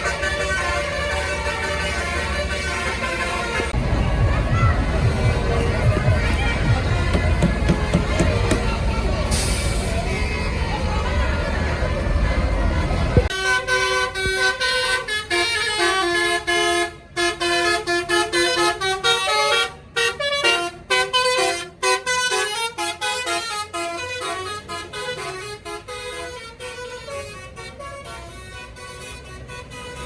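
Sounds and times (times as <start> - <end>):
bus musical horn melody: 0.0 - 30.0
low rumble: 3.8 - 7.7.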